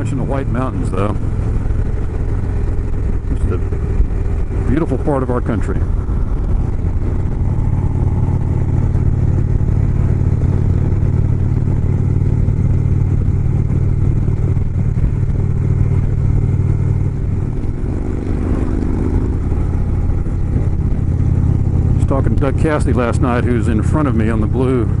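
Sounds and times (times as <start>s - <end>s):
motorcycle engine cruising: 0.0s - 25.0s.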